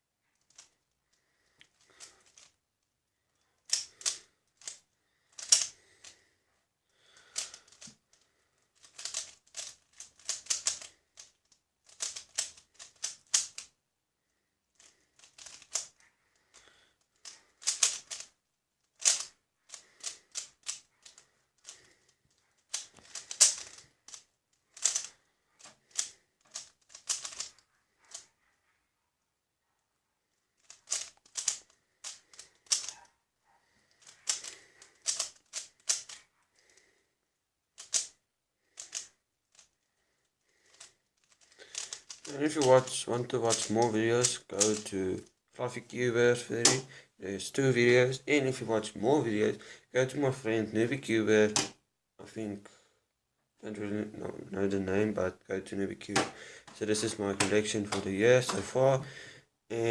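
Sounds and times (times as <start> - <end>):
speed cube clicking: 1.6 - 2.5, 3.6 - 6.2, 7.2 - 8.0, 8.8 - 13.8, 14.8 - 28.2, 30.6 - 33.1, 33.9 - 36.2, 37.8 - 39.7, 40.6 - 44.9.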